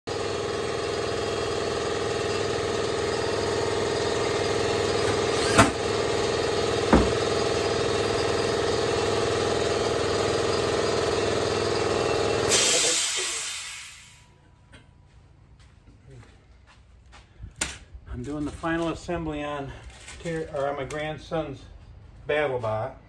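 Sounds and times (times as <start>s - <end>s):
motor running: 0.1s - 13.6s.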